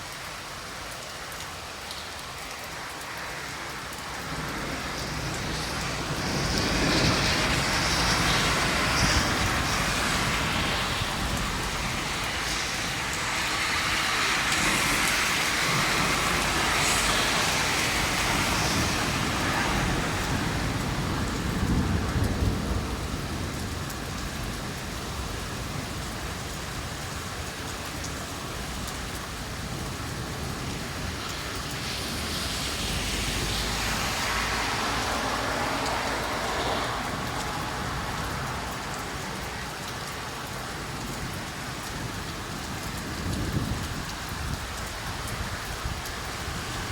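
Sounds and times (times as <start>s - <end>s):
heavy rain splashing: 0.0s - 46.9s
thunder rumbling: 4.3s - 26.2s.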